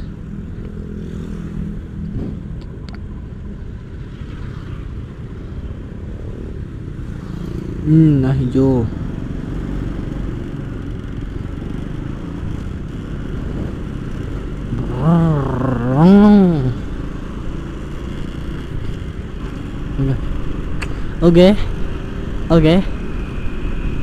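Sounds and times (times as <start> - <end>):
road and wind noise: 0.0 - 24.0
motorcycle engine running: 9.0 - 21.1
short voice sound: 14.7 - 16.8.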